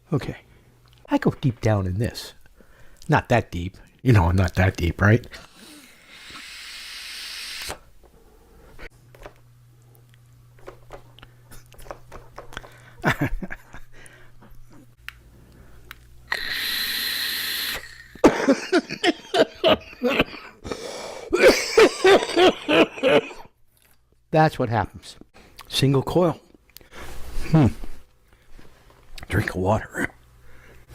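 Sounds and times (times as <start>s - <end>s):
man exhaling breathy hiss: 5.4s - 7.8s, 16.3s - 18.2s
harsh coughing: 18.1s - 23.6s.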